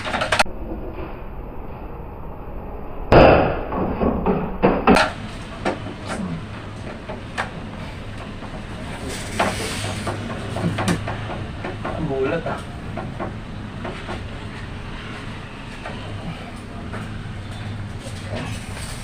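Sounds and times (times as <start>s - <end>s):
hand tools knocking and clicking: 9.3s - 14.3s.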